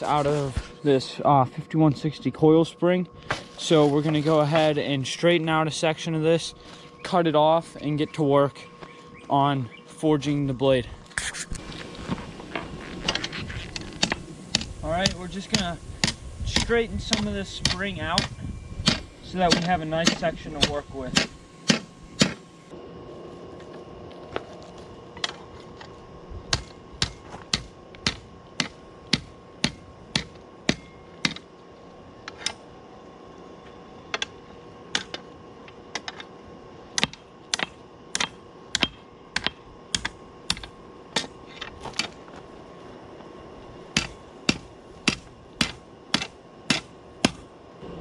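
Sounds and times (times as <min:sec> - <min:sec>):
steady hum: 0:00.0 - 0:48.0
hammer striking metal on anvil: 0:27.0 - 0:31.4.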